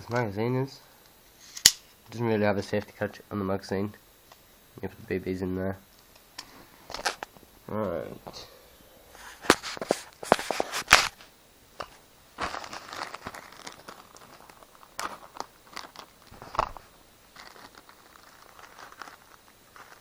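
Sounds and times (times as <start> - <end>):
plastic bag crinkling: 12.4 - 20.0.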